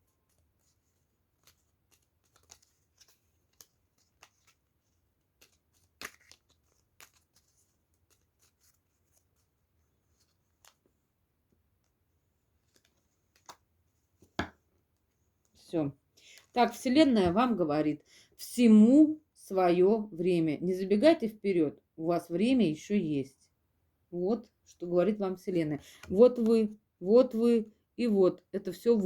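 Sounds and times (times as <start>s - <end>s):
cards shuffling with soft clicks: 0.0s - 16.6s, 25.8s - 26.7s.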